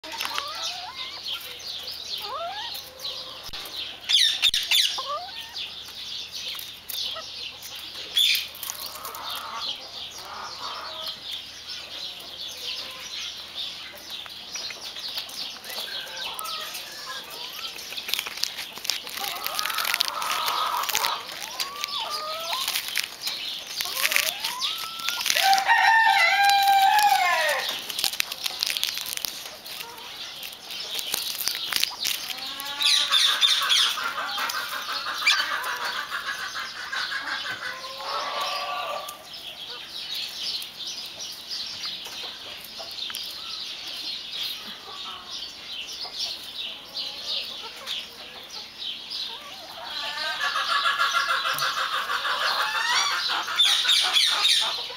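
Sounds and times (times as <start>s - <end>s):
chickens clucking: 0.0s - 54.9s
small clicks and rustles: 17.7s - 33.0s
rooster crowing: 25.4s - 27.7s.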